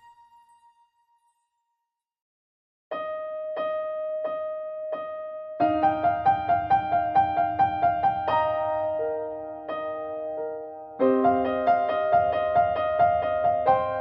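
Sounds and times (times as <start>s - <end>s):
electric piano music: 2.9s - 14.0s.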